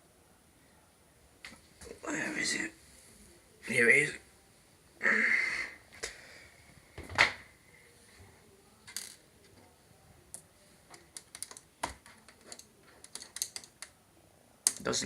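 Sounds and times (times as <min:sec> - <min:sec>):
metal screws clicking on hard surface: 0:12.3 - 0:13.9.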